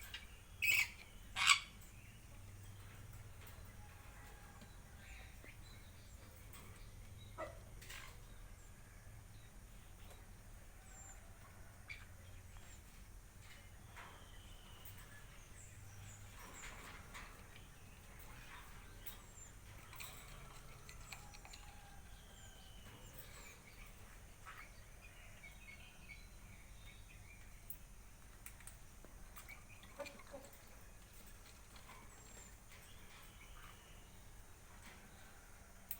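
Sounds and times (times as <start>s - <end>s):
faint bird chirps: 10.8s - 35.9s.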